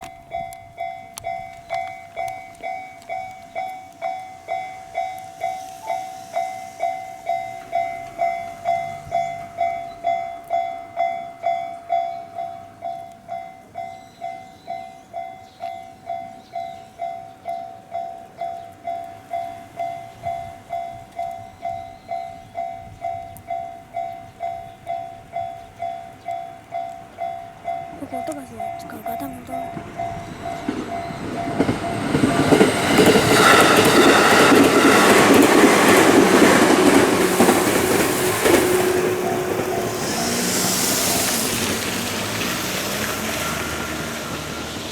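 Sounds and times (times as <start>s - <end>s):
level-crossing warning bell: 0.0s - 40.7s.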